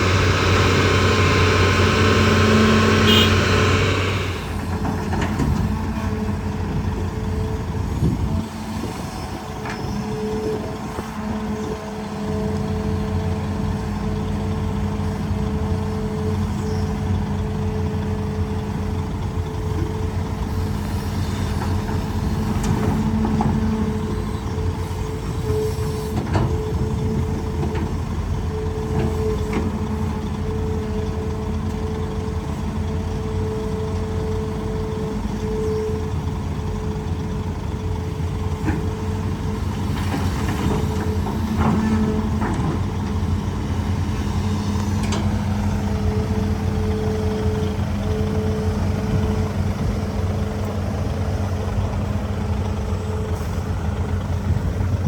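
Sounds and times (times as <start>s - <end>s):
hydraulic whine: 0.0s - 5.7s
excavator diesel engine running: 0.0s - 55.0s.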